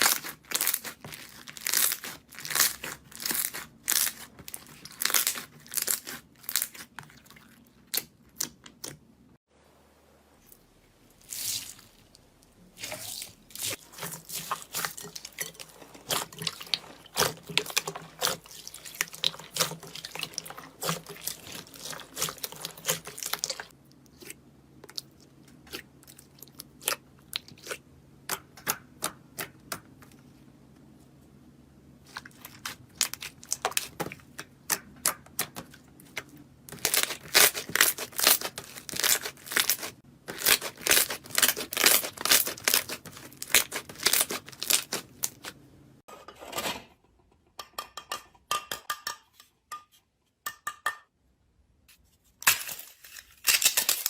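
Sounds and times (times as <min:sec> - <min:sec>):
slime crackling: 0:00.0 - 0:08.4, 0:12.8 - 0:23.7, 0:36.7 - 0:45.6.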